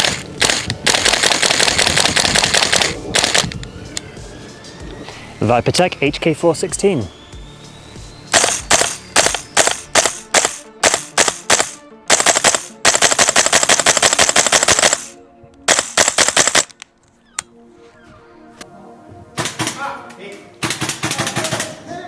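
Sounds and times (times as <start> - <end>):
airsoft rifle firing: 0.0 - 3.5, 8.3 - 16.8, 20.6 - 21.7.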